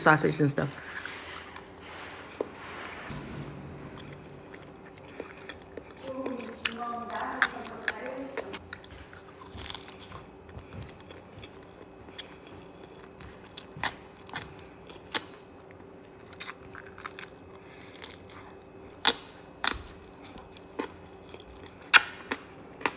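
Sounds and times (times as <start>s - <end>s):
chewing with wet mouth sounds: 4.9s - 22.9s.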